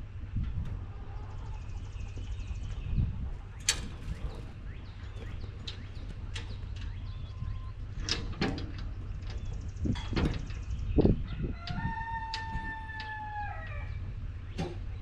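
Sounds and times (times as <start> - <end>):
rooster crowing: 11.3 - 14.0.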